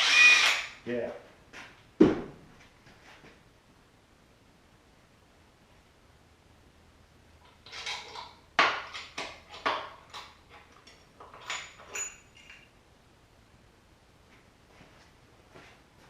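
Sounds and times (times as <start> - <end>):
metal tools clinking and clanking: 7.4 - 12.7.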